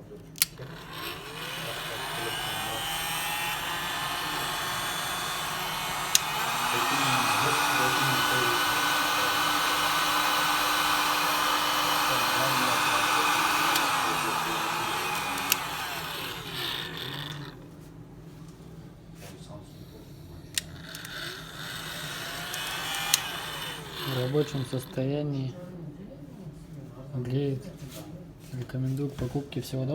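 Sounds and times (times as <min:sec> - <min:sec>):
heat gun fan whirring: 0:00.0 - 0:17.7, 0:20.4 - 0:25.2
switch clicking: 0:00.4 - 0:06.6.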